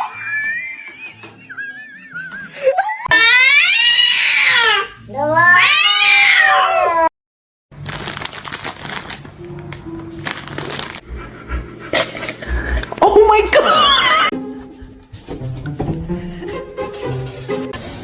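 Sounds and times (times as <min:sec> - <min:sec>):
cat yowling meows: 0:03.1 - 0:07.1, 0:13.6 - 0:14.3.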